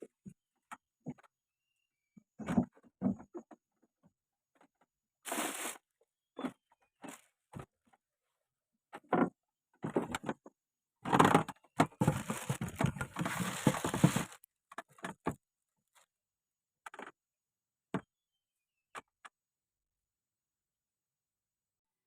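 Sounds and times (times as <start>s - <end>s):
rustling and scraping: 11.1s - 15.0s.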